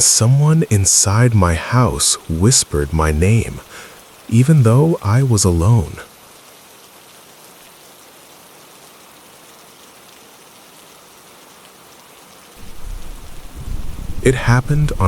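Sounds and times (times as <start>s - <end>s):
heavy rain falling: 0.0s - 6.6s, 7.5s - 15.0s
thunder rumble: 12.6s - 15.0s.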